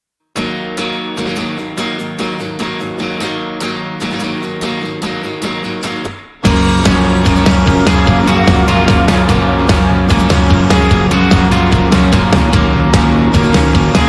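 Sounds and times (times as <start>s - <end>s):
guitar strumming: 0.4s - 14.0s
full-band rock music: 6.4s - 14.0s.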